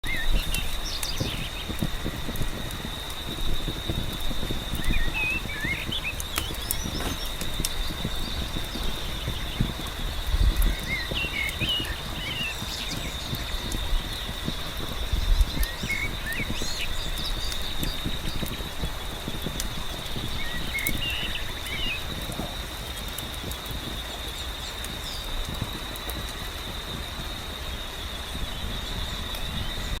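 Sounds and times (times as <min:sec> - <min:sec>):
rain pattering: 0:00.0 - 0:30.0
wood fire crackling: 0:00.0 - 0:30.0
bird chirps: 0:04.1 - 0:22.6.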